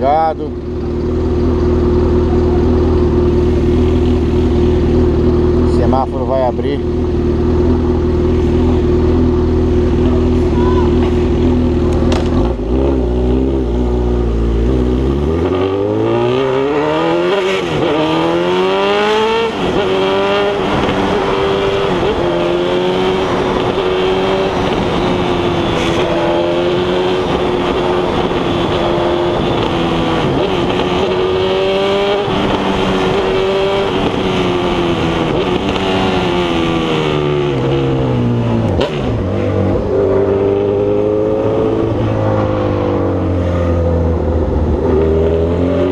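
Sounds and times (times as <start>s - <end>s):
motorcycle engine revving: 0.0s - 45.9s.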